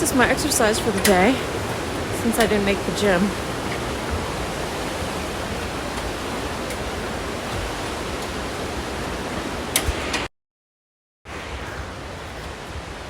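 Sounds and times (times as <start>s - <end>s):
creek water flowing: 0.0s - 10.1s.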